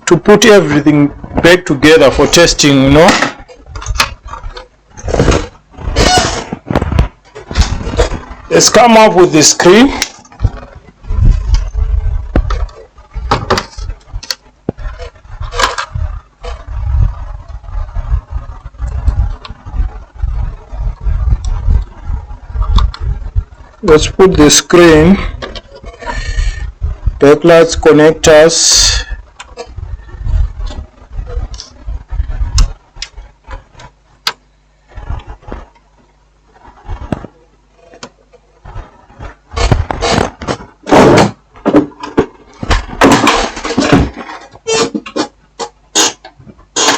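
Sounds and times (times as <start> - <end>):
low rumble: 10.3 - 23.8, 29.0 - 34.0.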